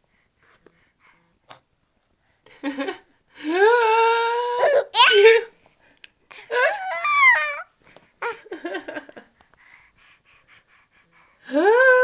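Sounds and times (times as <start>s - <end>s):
baby laughing: 8.2s - 8.6s.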